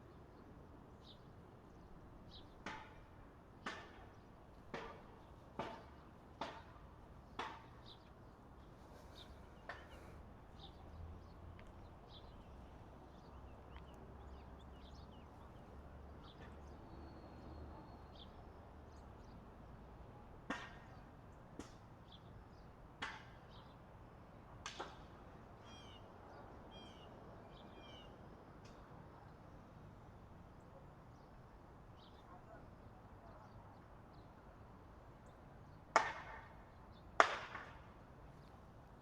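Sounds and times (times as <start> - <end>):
faint birds chirping: 3.6 - 19.5.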